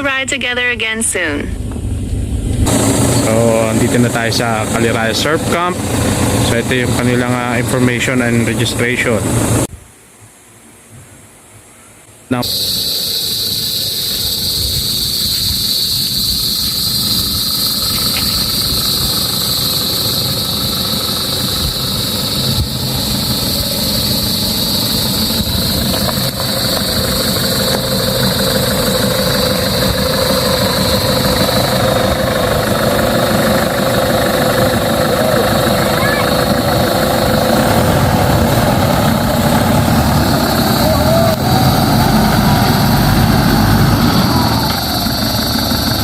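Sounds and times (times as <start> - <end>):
car engine and road rumble: 0.0 - 9.7, 12.4 - 46.0
high-pitched hiss: 11.7 - 37.9.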